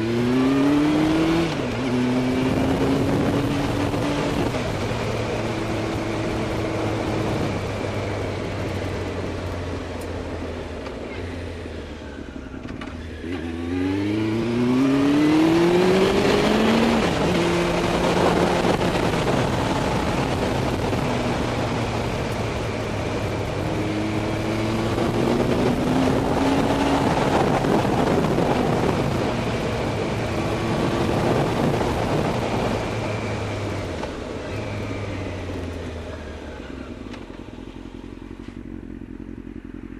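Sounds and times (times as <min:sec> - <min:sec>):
muffled wind noise: 0:00.0 - 0:09.3, 0:14.1 - 0:35.7
motorcycle engine: 0:00.0 - 0:39.9.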